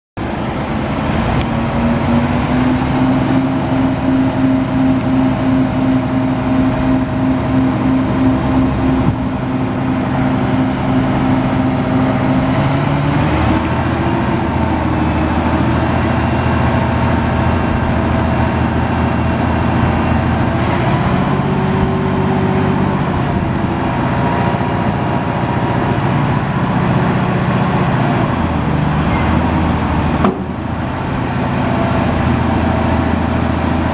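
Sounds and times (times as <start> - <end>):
diesel truck engine running: 0.2 - 33.9.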